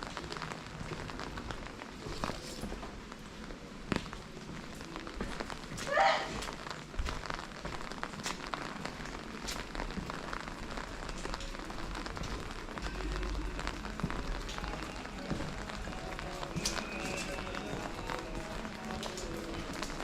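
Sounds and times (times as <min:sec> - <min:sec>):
rain falling: 0:00.0 - 0:20.0
high-pitched cry: 0:05.9 - 0:06.4.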